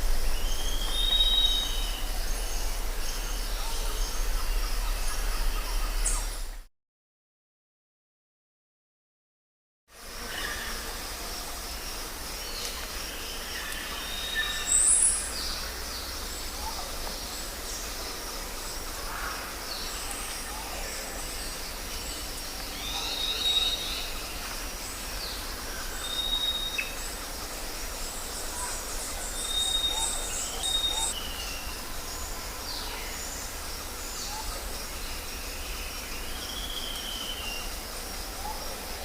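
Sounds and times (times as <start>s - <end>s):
background hiss and low rumble: 0.0s - 6.6s, 10.0s - 39.0s
birds calling: 21.9s - 37.7s.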